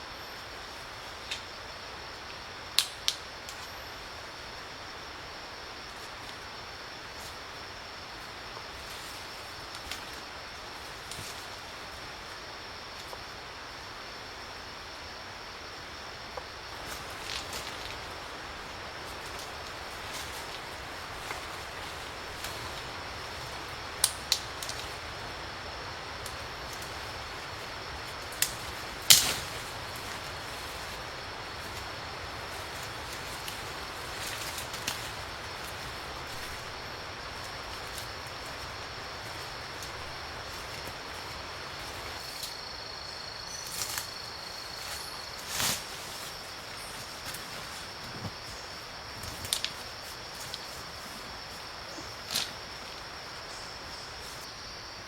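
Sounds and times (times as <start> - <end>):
high insect drone: 0.0 - 55.0
steady background hiss: 0.0 - 55.0
faint clicks or snaps: 2.8 - 3.6, 24.0 - 24.8.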